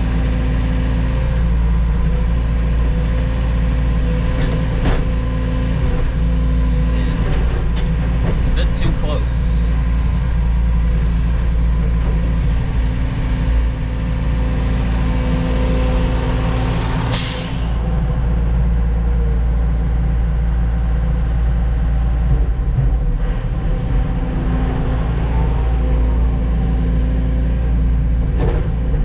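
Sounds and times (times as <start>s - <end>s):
diesel truck engine running: 0.0s - 29.0s
air brake hiss: 17.1s - 17.8s.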